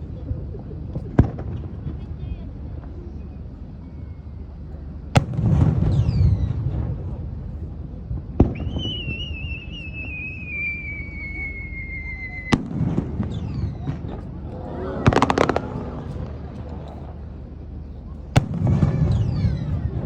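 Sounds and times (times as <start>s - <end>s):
falling firework whistles: 5.2s - 6.8s, 8.4s - 14.3s, 15.0s - 15.8s, 18.4s - 20.0s
firework bangs: 5.2s - 7.5s, 8.2s - 11.5s, 12.4s - 16.6s, 18.3s - 20.0s
firework crackle: 8.4s - 16.6s.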